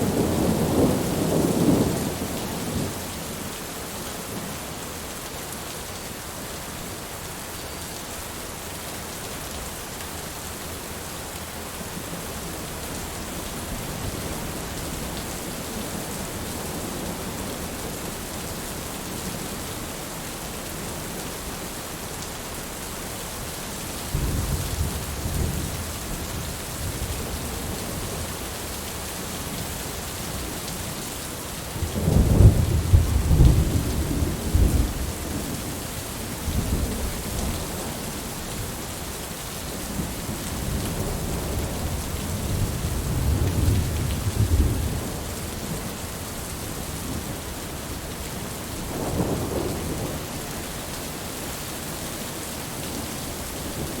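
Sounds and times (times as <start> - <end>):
steady rain falling: 0.0 - 54.0
thunder rumbling: 31.8 - 35.6, 48.8 - 50.3.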